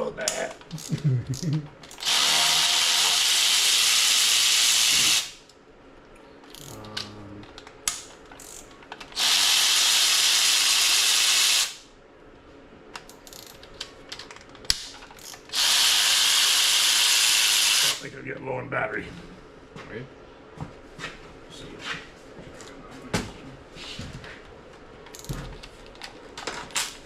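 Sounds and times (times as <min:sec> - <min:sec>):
power ratchet running: 0:01.9 - 0:05.4, 0:09.2 - 0:11.8, 0:15.2 - 0:18.0.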